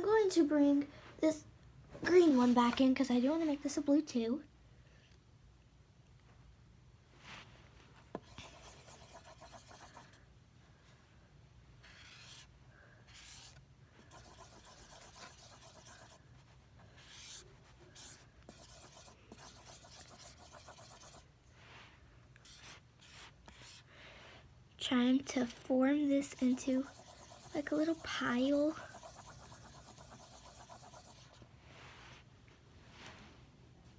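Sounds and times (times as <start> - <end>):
pencil scraping through thick soap: 8.2 - 10.2, 11.8 - 12.5, 13.1 - 21.3, 22.4 - 23.9, 25.3 - 31.4.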